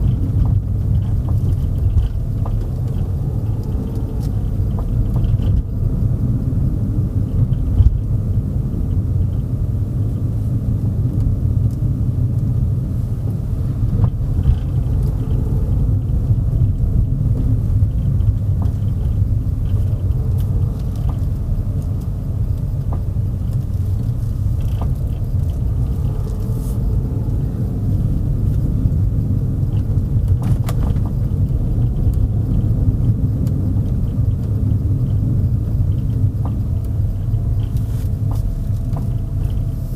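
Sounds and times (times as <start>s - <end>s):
car driving rumble from inside: 0.0s - 39.9s
faint clicks and knocks: 17.4s - 27.3s.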